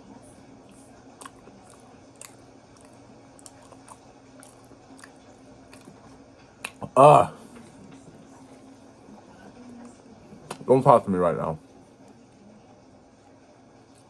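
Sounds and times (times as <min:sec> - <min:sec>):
faint steady hum: 0:00.0 - 0:14.0
chewing with wet crunches: 0:00.7 - 0:06.8.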